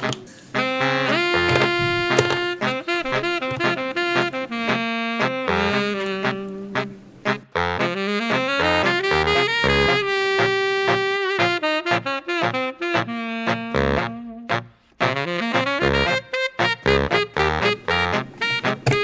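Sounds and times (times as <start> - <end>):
walking bass line: 0.0 - 4.8, 5.4 - 11.2
saxophone melody: 0.0 - 19.0.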